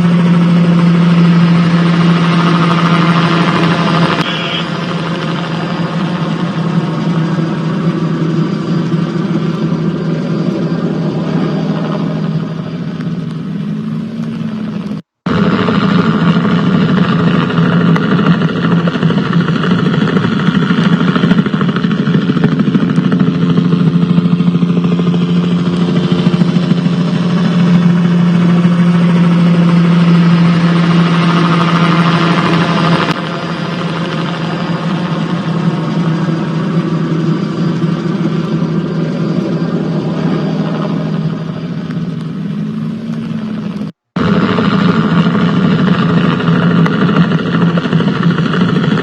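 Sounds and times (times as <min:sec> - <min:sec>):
engine running steadily: 0:00.0 - 0:49.0.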